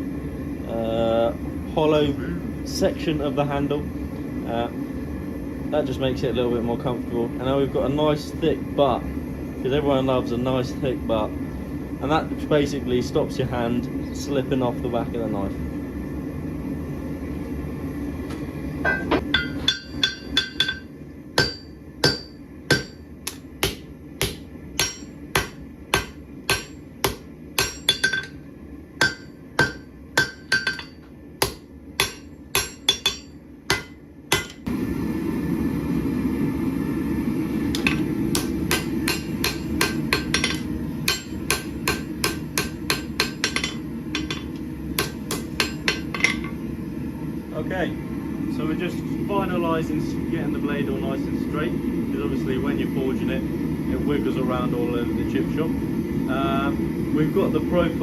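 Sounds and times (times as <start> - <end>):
hammer striking steel on anvil: 18.9 - 28.4, 29.0 - 34.7, 37.8 - 46.6.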